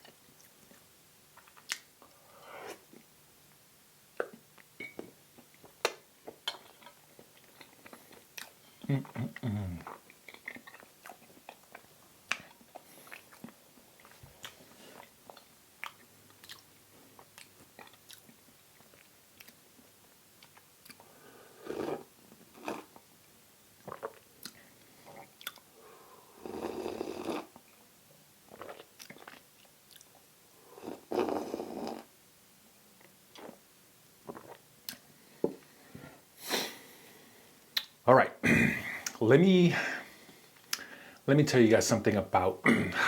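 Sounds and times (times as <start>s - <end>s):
close chewing and mouth smacks: 0.0s - 2.1s, 5.4s - 21.1s, 23.8s - 25.7s, 28.5s - 30.3s, 33.0s - 33.6s, 34.2s - 35.1s, 37.7s - 38.0s.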